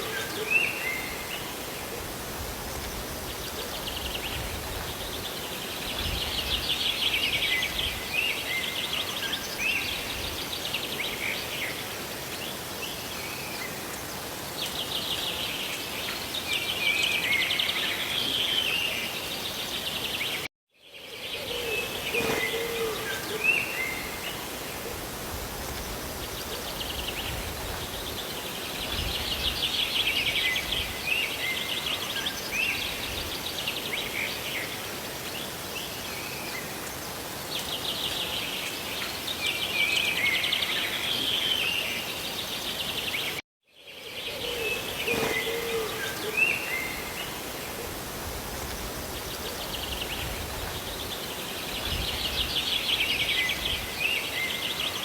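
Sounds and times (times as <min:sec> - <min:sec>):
birds chirping: 0:21.4 - 0:24.6, 0:44.3 - 0:47.8.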